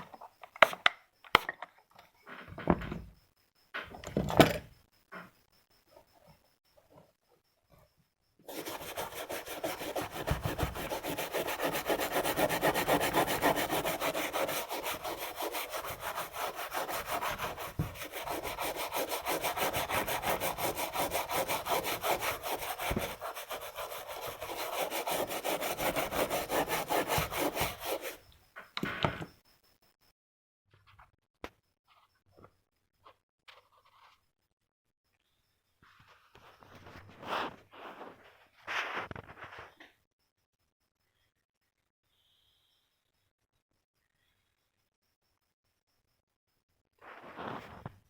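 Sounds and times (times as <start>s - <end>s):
scraping on circuit board: 8.4s - 28.3s.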